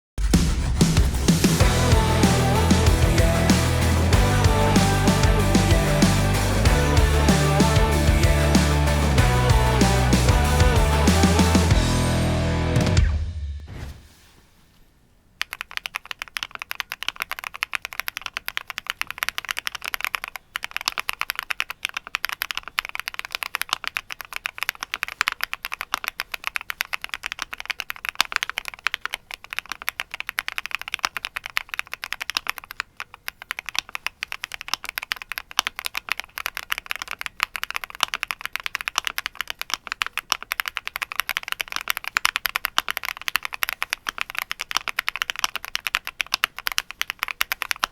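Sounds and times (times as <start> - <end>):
fast mechanical keyboard typing: 15.4 - 47.9.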